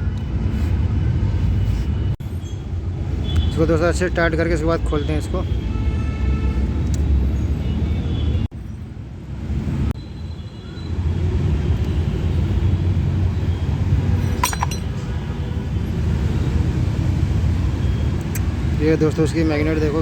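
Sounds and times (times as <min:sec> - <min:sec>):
metallic clinks of hand tools: 0:14.4 - 0:14.9.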